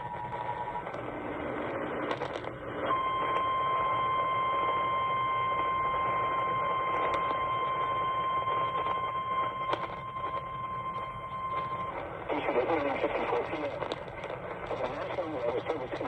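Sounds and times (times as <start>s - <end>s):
radio static with crackles: 0.0s - 16.0s
steady single-pitch alert tone: 2.9s - 12.2s.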